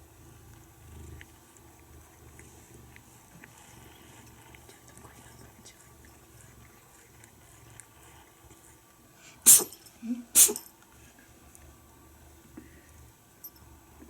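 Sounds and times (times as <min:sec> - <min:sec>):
cat snuffling: 0:00.3 - 0:05.7
cat sneezing: 0:09.4 - 0:10.7.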